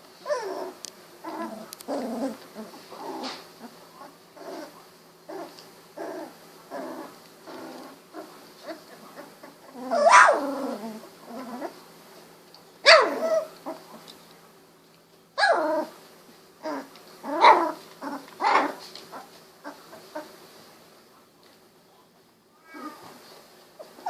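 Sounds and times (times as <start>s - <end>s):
puppies yelping and barking: 0.2s - 11.8s, 12.9s - 14.1s, 16.6s - 20.3s.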